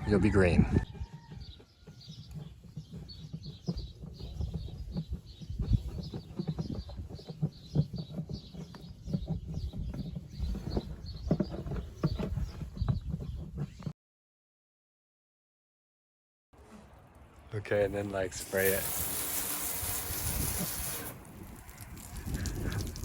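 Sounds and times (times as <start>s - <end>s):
small birds chirping: 0.9s - 13.9s.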